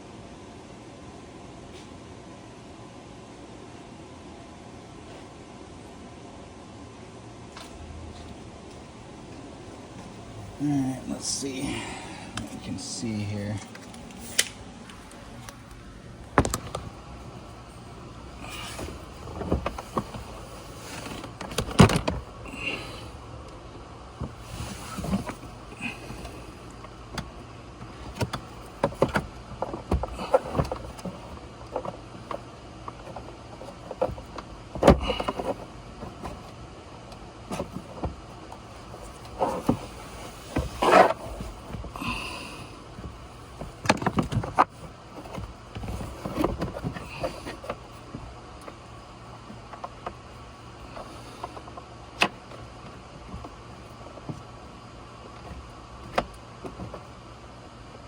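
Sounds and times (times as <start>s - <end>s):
clicks and rattles of plastic parts: 25.0s - 39.8s, 42.8s - 57.2s.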